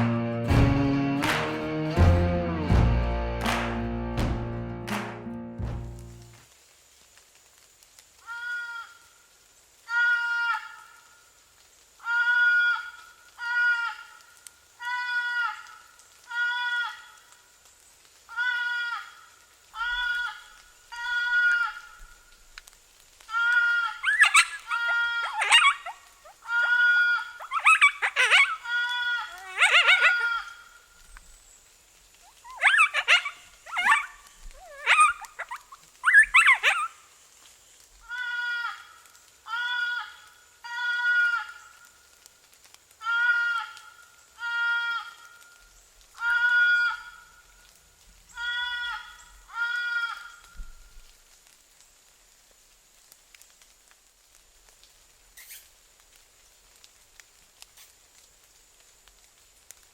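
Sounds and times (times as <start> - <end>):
light ticks and clicks: 22.5 - 23.6
warbling animal distress cries: 23.4 - 30.6, 32.2 - 37.0.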